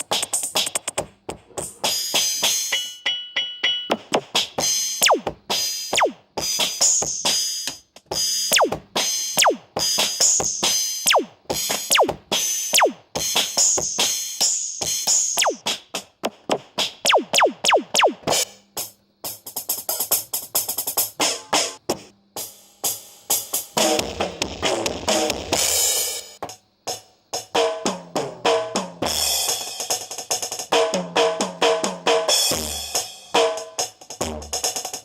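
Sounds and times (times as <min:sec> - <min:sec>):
drum machine beat: 0:00.0 - 0:01.4, 0:04.0 - 0:06.8, 0:08.5 - 0:13.4, 0:15.4 - 0:15.7, 0:16.8 - 0:18.4, 0:33.4 - 0:35.0.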